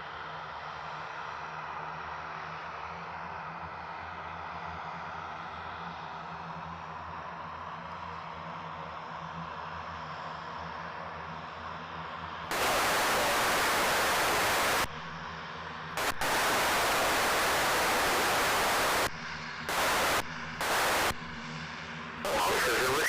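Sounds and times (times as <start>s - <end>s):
radio static hiss: 12.5s - 15.0s, 16.0s - 21.4s, 22.2s - 23.0s.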